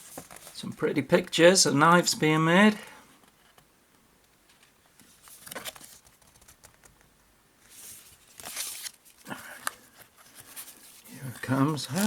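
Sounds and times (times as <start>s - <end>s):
paper and cardboard rustling: 0.0s - 0.6s, 4.5s - 6.9s, 7.6s - 12.0s.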